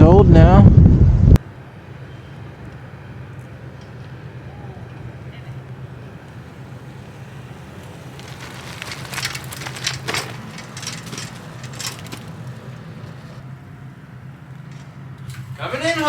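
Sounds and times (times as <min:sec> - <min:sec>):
wind buffeting microphone: 0:00.0 - 0:15.1
crackling crunching noises: 0:02.6 - 0:13.8.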